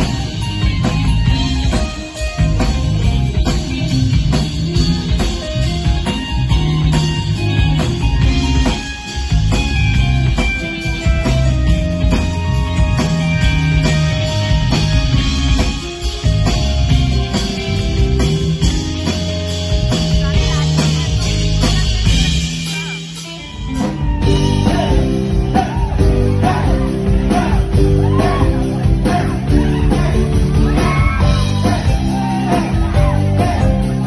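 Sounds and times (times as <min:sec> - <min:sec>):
live band playing: 0:00.0 - 0:34.0
lead vocal singing: 0:24.3 - 0:34.0.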